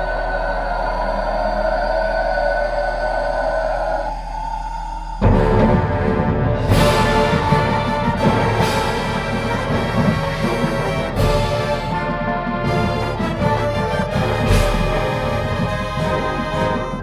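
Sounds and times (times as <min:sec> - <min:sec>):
low drumming: 0:00.0 - 0:17.0
marching band playing: 0:05.2 - 0:17.0.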